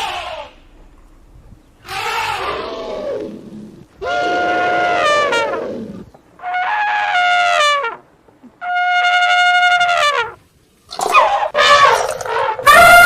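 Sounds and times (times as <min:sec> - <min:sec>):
elephant trumpeting: 0:01.8 - 0:07.9, 0:10.9 - 0:13.0.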